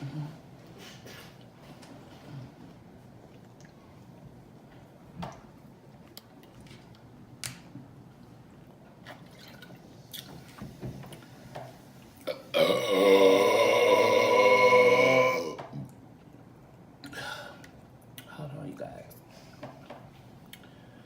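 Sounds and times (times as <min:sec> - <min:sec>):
woman burping loudly: 0:12.2 - 0:15.6.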